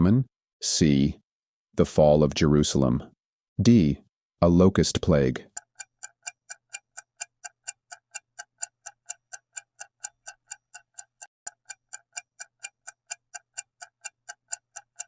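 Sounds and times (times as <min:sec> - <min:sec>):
clock ticking: 0:04.9 - 0:15.0.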